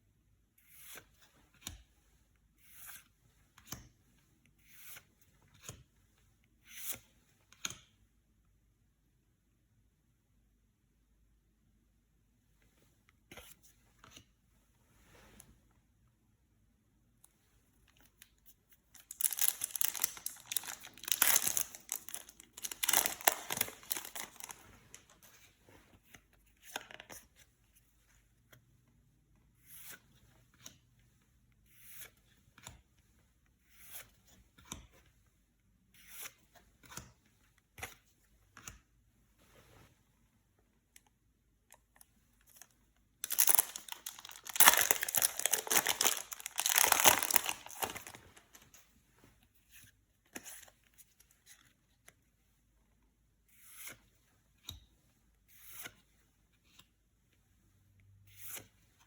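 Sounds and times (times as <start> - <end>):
cards being handled: 18.0 - 27.4, 42.4 - 48.8
foil wrappers tearing and crinkling: 19.1 - 24.6, 43.2 - 48.2.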